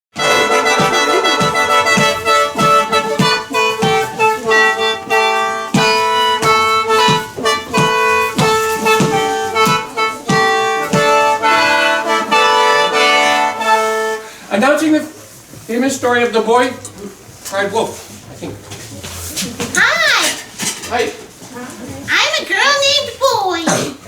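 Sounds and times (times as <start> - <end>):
upbeat instrumental music: 0.1 - 14.4.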